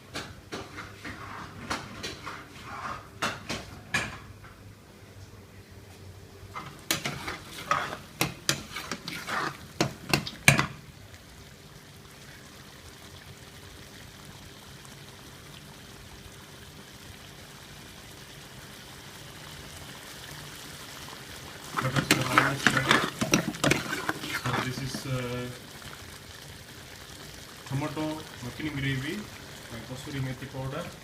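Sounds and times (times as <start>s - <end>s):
faint hum with light hiss: 0.0s - 31.0s
metal utensils clinking on cookware: 21.7s - 25.1s.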